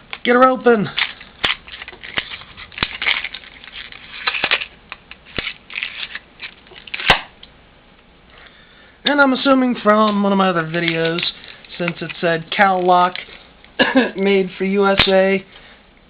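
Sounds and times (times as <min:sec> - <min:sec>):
knife cutting plastic packaging: 0:01.0 - 0:07.3
plastic snapping: 0:01.0 - 0:07.5.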